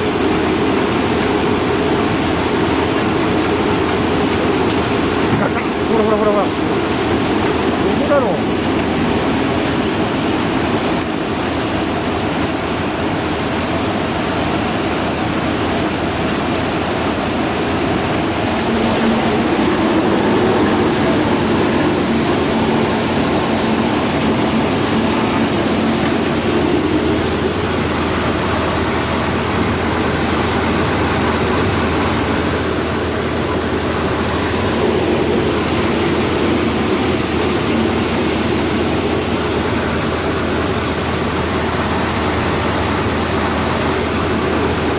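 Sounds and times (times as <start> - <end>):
rice huller machinery rushing: 0.0 - 44.9.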